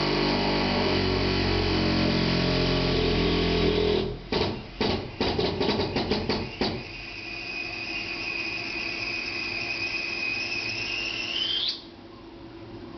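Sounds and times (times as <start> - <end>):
pipe hammering knocks: 4.3 - 6.9
toilet fill valve squealing: 5.8 - 11.9.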